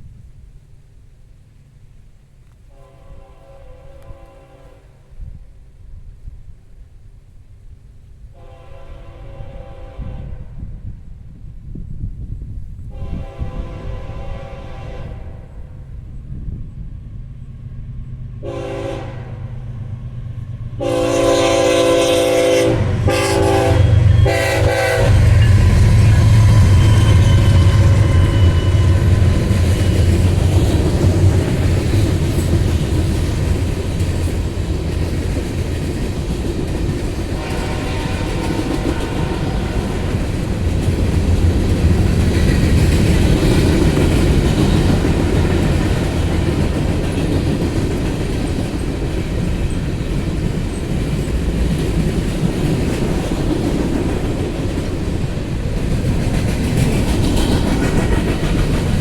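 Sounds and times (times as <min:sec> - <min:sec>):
diesel locomotive drone: 0:00.0 - 0:59.0
train air horn: 0:02.7 - 0:05.3, 0:08.3 - 0:10.9, 0:12.9 - 0:15.9, 0:18.4 - 0:19.9, 0:20.8 - 0:30.7, 0:37.3 - 0:40.3.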